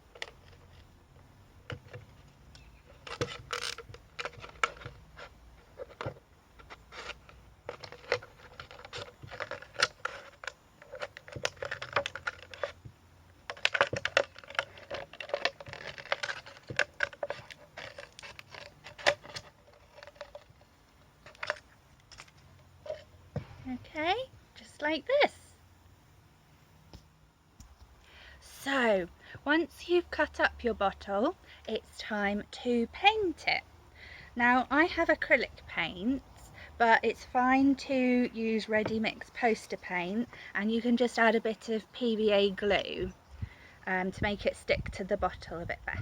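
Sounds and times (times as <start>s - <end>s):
plastic crinkling: 1.6s - 24.0s
scissors cutting plastic bottle: 13.5s - 20.6s.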